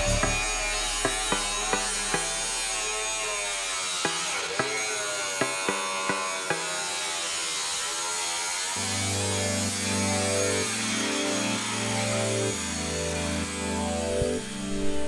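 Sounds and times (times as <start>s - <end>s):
background music: 0.0s - 4.3s
hammer striking chisel on metal: 0.0s - 7.0s.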